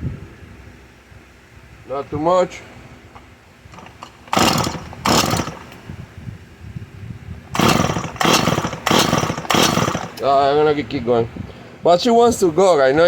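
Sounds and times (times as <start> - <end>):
chainsaw cranking and firing: 3.2 - 5.9, 7.5 - 10.4.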